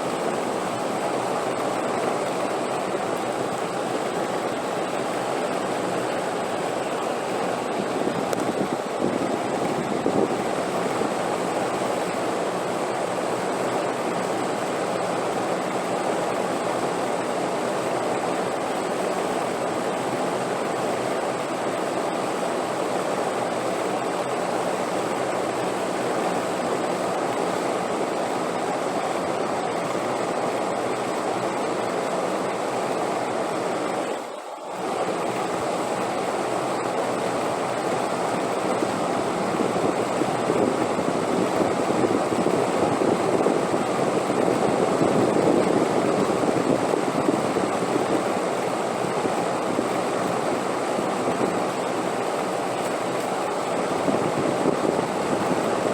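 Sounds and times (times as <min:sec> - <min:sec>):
rushing wind: 0:04.0 - 0:14.8, 0:34.9 - 0:55.9.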